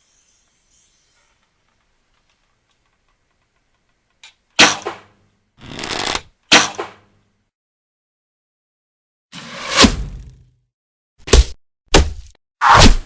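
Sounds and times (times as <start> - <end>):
loud sharp cracks: 4.6 - 5.2.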